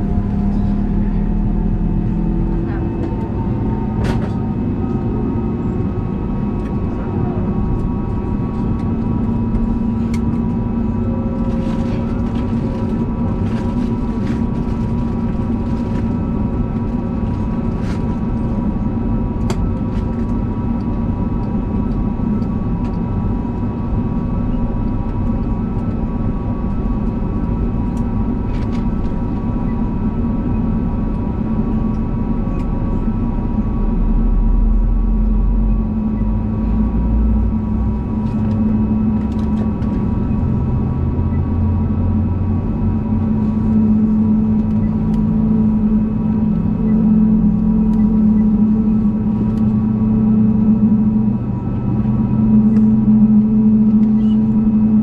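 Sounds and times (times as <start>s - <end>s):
aircraft engines rumbling: 0.0s - 55.0s.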